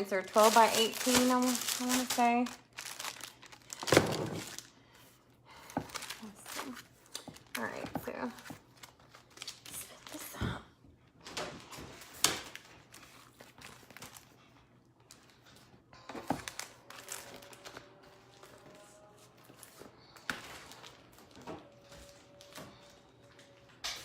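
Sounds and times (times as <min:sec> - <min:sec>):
packaging crinkling: 0:00.0 - 0:04.9, 0:05.6 - 0:10.2, 0:16.3 - 0:18.8.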